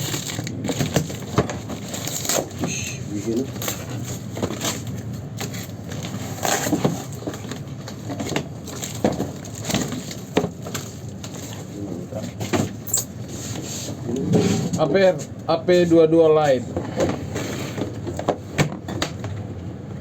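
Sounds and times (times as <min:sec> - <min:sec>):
plastic and cardboard crinkling: 0:00.0 - 0:14.0.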